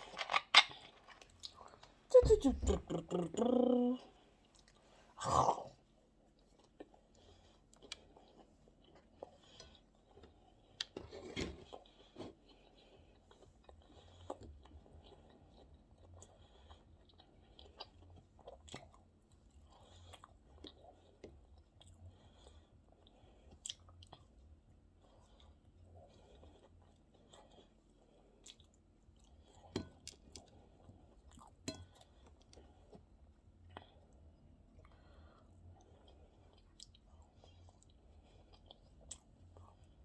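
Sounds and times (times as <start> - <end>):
person chewing food: 0.0 - 2.0, 4.4 - 40.0.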